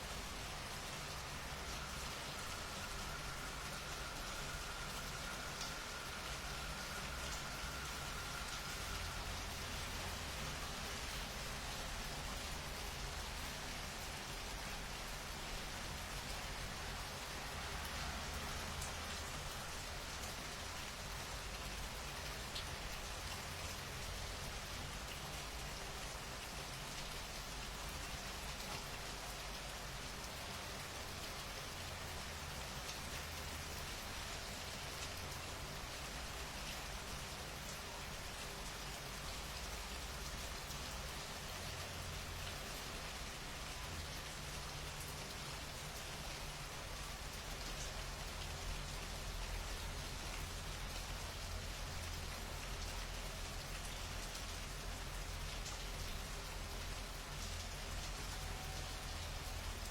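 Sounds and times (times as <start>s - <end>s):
rain pattering: 0.0s - 59.9s.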